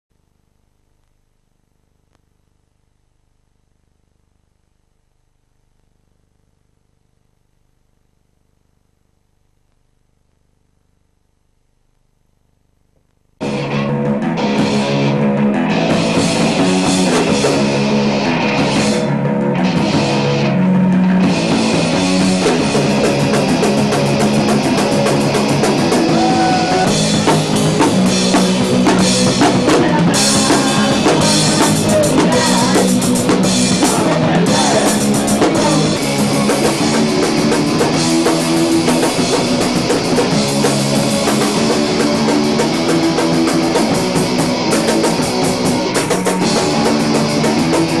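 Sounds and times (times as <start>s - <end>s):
loud rock music: 13.4s - 48.0s.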